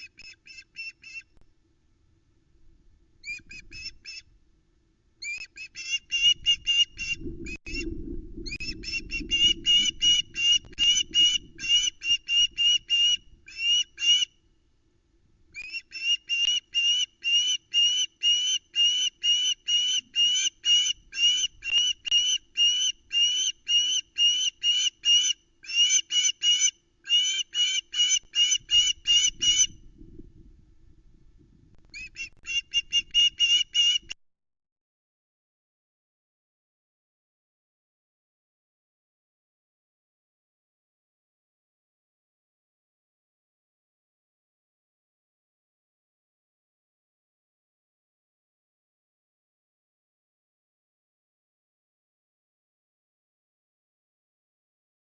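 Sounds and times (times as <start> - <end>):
low rumble: 7.1 - 11.7.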